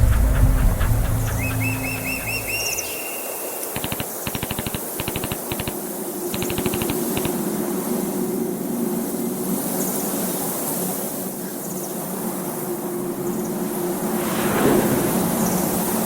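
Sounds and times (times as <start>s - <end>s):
mechanical drone with low hum: 0.0s - 2.8s
rushing noise: 0.0s - 3.0s, 13.6s - 16.0s.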